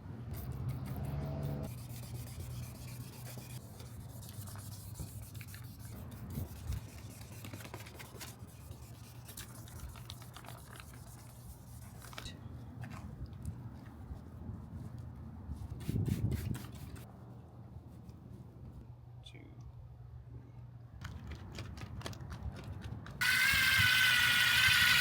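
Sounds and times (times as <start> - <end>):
scratchy sanding on plastic: 0.4 - 12.2.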